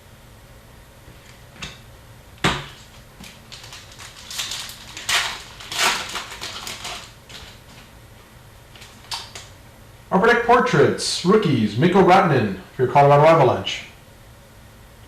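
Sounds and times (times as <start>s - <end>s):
foil wrapper tearing: 2.7s - 7.9s
foil wrapper crinkling: 2.7s - 8.0s, 8.7s - 9.6s.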